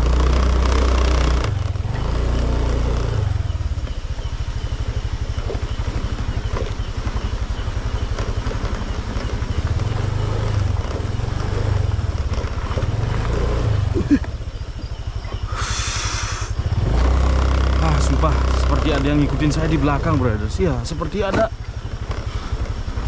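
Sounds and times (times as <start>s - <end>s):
motorcycle engine at low revs: 0.0s - 23.0s
brief hiss: 15.5s - 16.6s.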